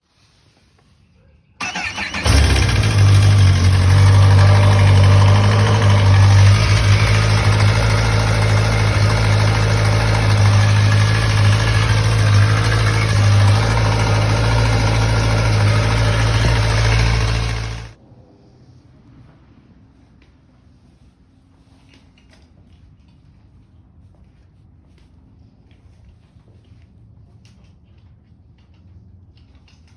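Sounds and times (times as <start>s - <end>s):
motorcycle engine idling: 1.6s - 18.0s.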